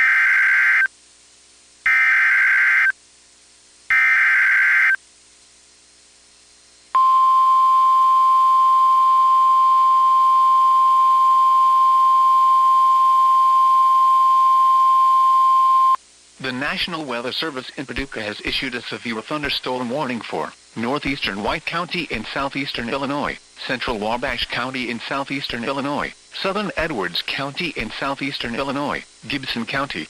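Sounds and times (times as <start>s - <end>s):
steady warning alarm tone: 1.9s - 2.9s, 3.9s - 5.0s.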